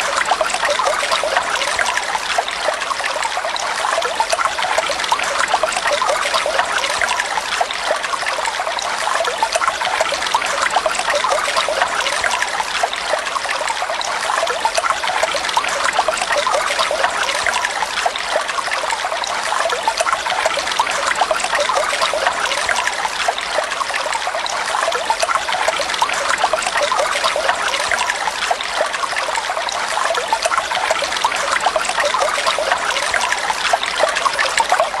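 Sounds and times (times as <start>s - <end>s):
water trickling and splashing: 0.0s - 35.0s.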